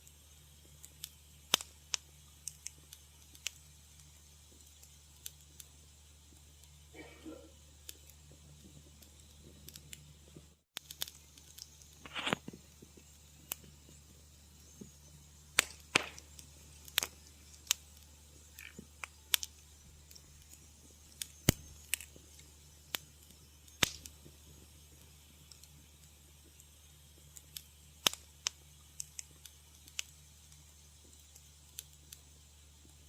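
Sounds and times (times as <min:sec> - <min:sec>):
faint steady hiss: 0:00.0 - 0:33.0
wood fire crackling: 0:00.0 - 0:33.0.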